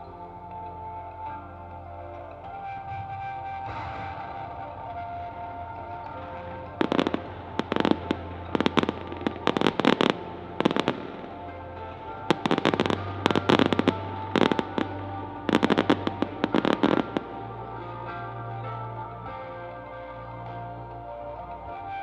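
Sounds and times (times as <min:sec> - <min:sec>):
background music: 0:00.0 - 0:22.0
fireworks bangs and crackles: 0:02.5 - 0:19.4.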